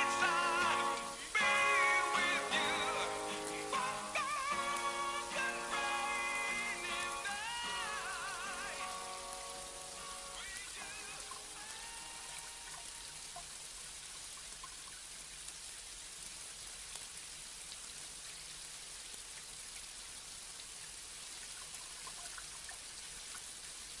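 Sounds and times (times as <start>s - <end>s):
faint song: 0.0s - 13.5s
single raindrops: 0.0s - 24.0s
steady rain falling: 0.0s - 24.0s.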